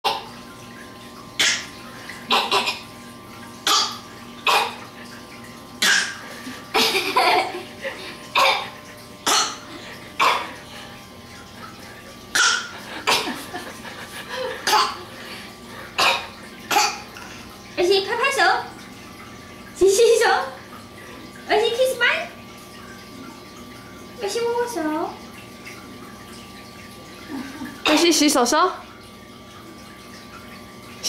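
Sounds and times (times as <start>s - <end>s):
toddler imitating a cough: 2.3s - 2.9s, 3.6s - 4.8s, 5.8s - 6.2s, 8.4s - 9.6s, 10.2s - 10.5s, 12.3s - 13.3s, 14.6s - 15.0s, 16.0s - 17.1s.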